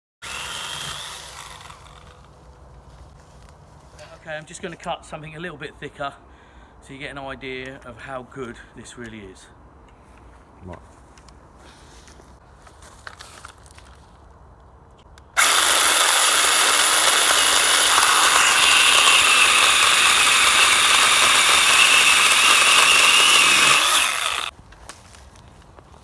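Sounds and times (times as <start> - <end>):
cordless pole saw cutting branch: 0.2 - 2.4, 15.4 - 24.5.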